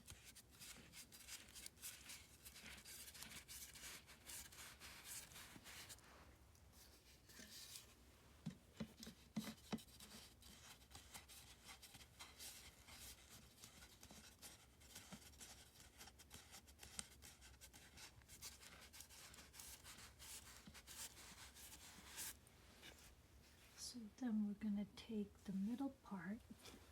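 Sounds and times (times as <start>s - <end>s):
plastic tubes and boards handled: 6.6s - 23.7s.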